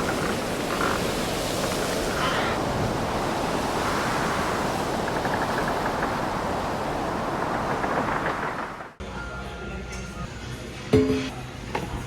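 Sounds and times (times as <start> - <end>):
rough sea waves: 0.0 - 9.0.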